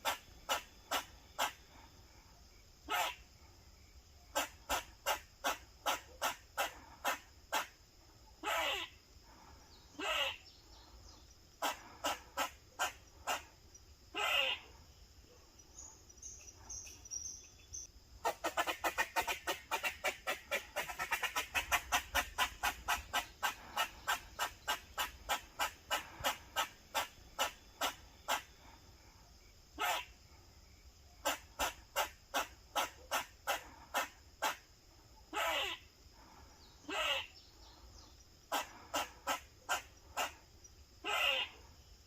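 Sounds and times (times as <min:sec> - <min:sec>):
squirrel barking alarm calls: 0:00.0 - 0:01.6, 0:02.8 - 0:03.3, 0:04.3 - 0:07.8, 0:08.4 - 0:10.6, 0:11.6 - 0:14.8, 0:15.6 - 0:28.8, 0:29.8 - 0:30.2, 0:31.2 - 0:34.6, 0:35.3 - 0:37.5, 0:38.5 - 0:40.4, 0:41.0 - 0:41.7.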